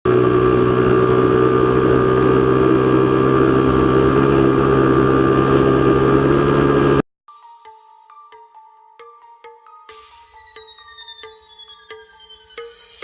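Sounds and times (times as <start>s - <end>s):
motorcycle engine at high revs: 0.0s - 7.0s.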